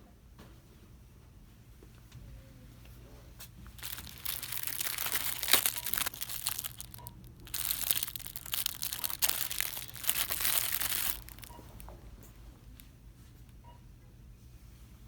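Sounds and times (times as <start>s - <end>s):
crinkly packaging being crushed: 3.7s - 11.9s.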